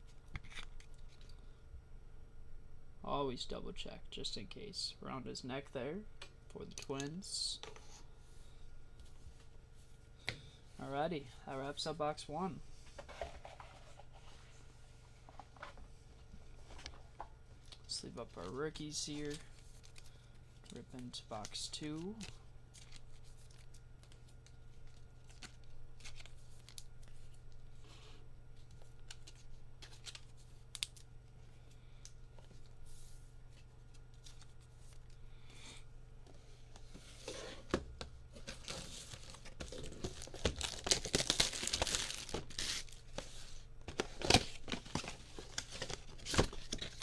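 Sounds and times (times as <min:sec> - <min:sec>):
foil wrappers crinkling and tearing: 0:17.6 - 0:27.6, 0:38.4 - 0:47.0
card box clicks and rustles: 0:38.3 - 0:47.0.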